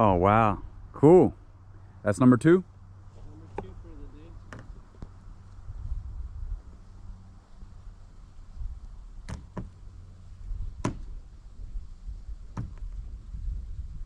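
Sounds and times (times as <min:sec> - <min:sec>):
steady low rumble: 0:00.0 - 0:14.0
sharp knocks: 0:09.2 - 0:09.8, 0:10.8 - 0:11.1, 0:12.5 - 0:12.9.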